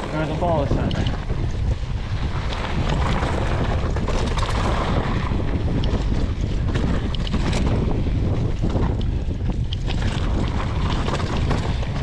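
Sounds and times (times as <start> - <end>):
bike clicks and rattles: 0.0 - 12.0
wind rushing over microphone: 0.0 - 12.0.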